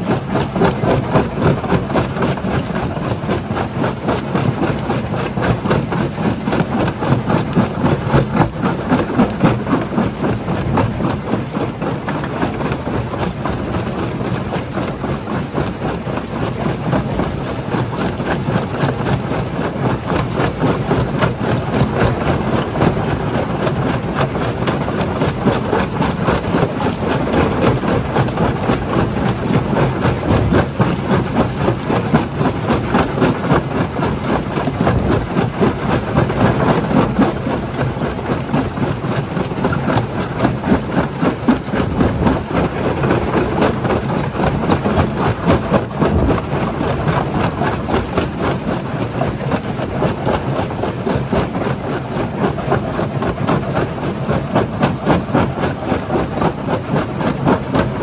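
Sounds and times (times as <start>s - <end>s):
heavy machinery drone: 44.5s - 49.0s.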